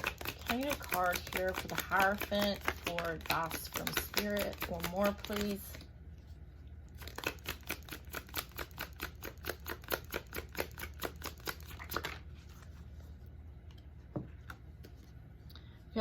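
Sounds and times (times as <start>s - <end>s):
cards being shuffled: 0.0s - 5.9s, 7.0s - 13.0s.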